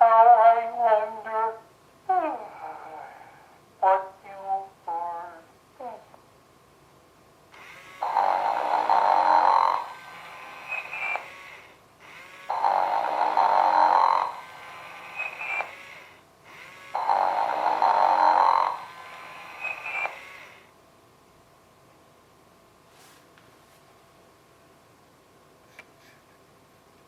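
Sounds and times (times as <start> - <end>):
toy snoring through small speaker: 2.1 - 3.5, 7.8 - 20.7.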